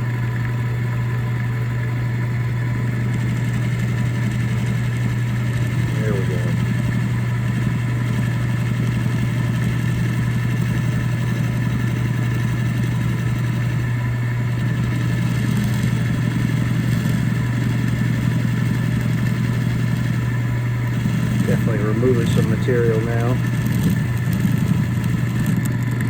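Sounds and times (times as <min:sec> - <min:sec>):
drill press motor hum: 0:00.0 - 0:26.0.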